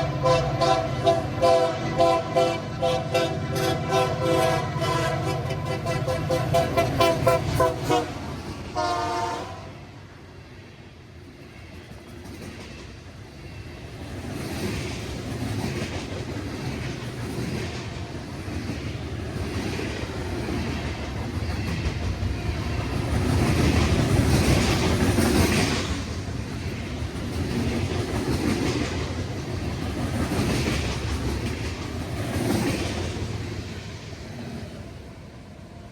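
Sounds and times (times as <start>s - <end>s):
train horn blasts: 0.0s - 9.8s
train wheels clattering over rails: 11.6s - 34.2s.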